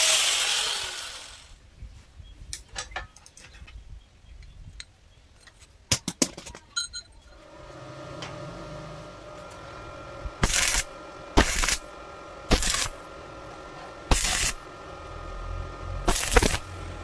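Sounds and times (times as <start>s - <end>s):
arc welding crackling hisses: 0.0s - 1.5s, 9.4s - 14.7s, 15.9s - 17.0s
welding machine hum: 0.0s - 1.6s, 7.4s - 17.0s.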